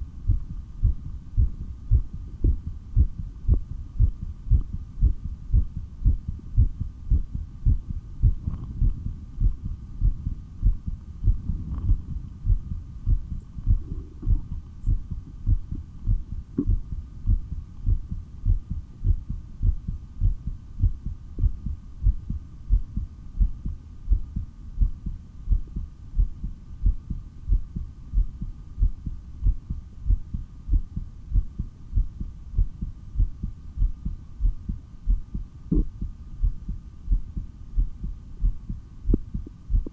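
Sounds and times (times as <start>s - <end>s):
faint steady hum: 0.0s - 39.9s
heartbeat thumps: 0.0s - 39.9s.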